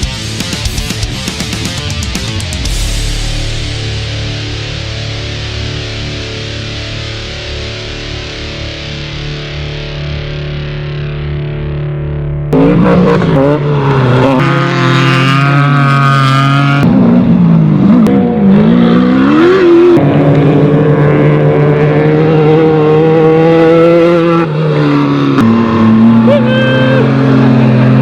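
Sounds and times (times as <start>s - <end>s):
race vehicle engines revving: 12.5s - 28.0s.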